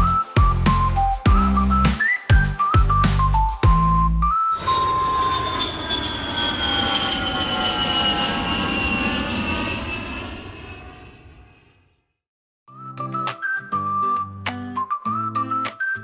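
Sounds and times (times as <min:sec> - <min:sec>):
airplane engine whine: 0:04.5 - 0:11.8.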